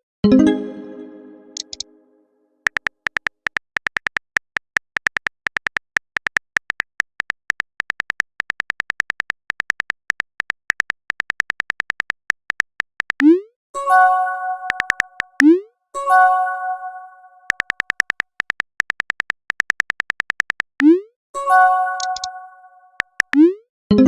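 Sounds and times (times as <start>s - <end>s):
phone keyboard taps: 2.7s - 13.2s, 17.5s - 20.8s.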